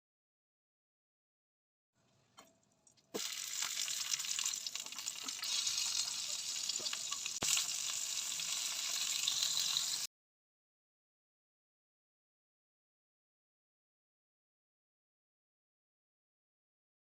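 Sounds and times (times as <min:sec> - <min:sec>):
food sizzling in hot oil: 0:03.1 - 0:10.1.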